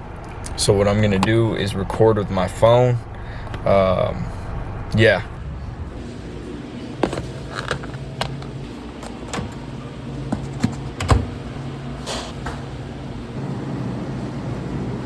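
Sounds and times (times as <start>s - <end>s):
steady low hum: 2.2s - 15.0s.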